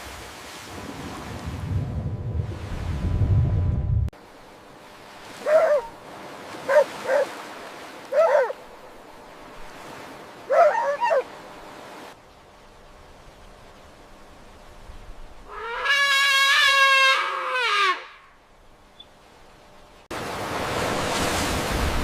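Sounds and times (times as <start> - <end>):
loud low rumble: 3.1 - 4.1
small dog yipping and whimpering: 10.5 - 11.3.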